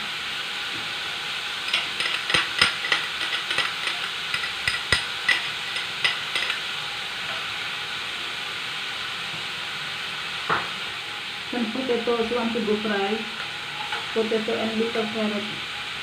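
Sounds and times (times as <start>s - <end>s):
onion sizzling in hot oil: 0.0s - 16.0s
spoon scraping a pan: 1.7s - 6.7s.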